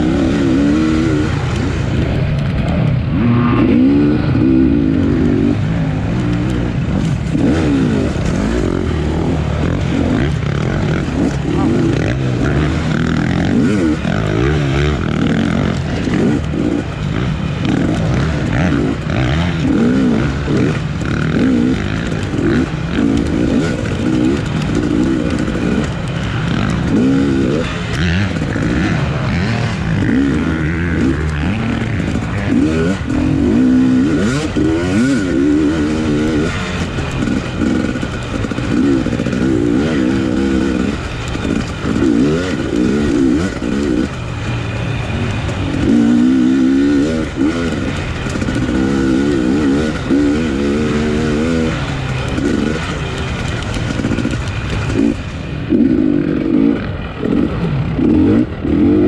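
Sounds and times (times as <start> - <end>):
motorcycle engine revving: 0.0 - 59.0.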